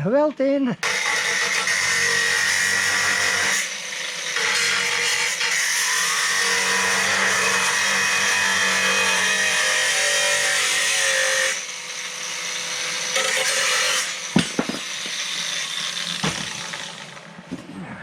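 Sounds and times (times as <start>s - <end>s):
angle grinder cutting sheet steel: 0.8s - 17.4s
sharp metal knocks: 14.3s - 15.2s, 16.2s - 17.0s.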